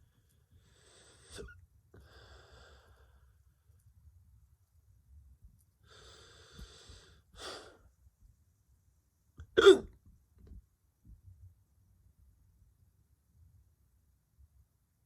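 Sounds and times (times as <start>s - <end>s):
man hiccuping: 9.4s - 9.9s.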